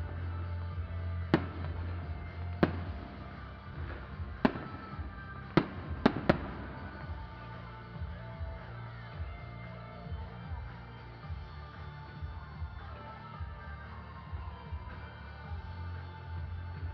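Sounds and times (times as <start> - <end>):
fireworks bangs: 0.8 - 8.6.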